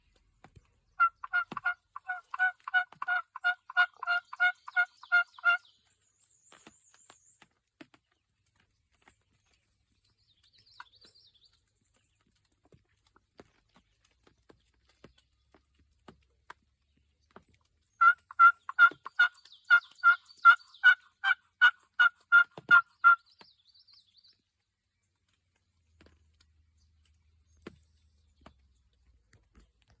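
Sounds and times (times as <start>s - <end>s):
turkey yelps: 1.0s - 5.6s, 18.0s - 23.2s.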